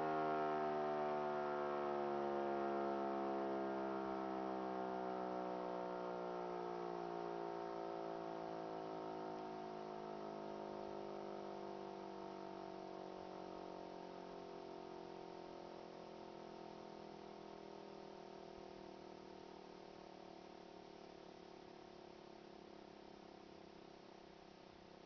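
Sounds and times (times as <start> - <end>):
electric siren winding down: 0.0 - 10.8.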